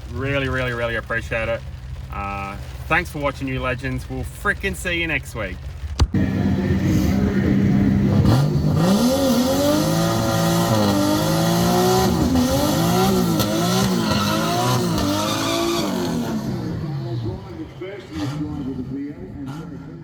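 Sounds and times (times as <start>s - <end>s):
car engine revving hard: 6.2s - 18.8s.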